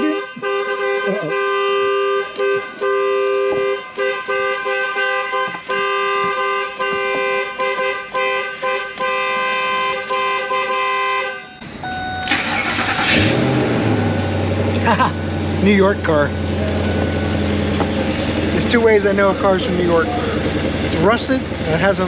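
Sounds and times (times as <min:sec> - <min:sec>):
car alarm horn blaring: 0:00.0 - 0:14.1, 0:15.6 - 0:22.0
car engine cranking: 0:11.6 - 0:22.0.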